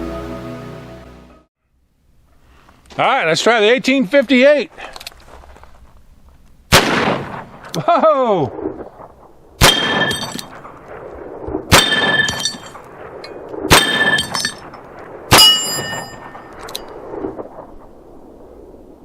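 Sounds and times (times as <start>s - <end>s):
metallic ringing tone: 13.8s - 14.6s, 15.4s - 16.5s.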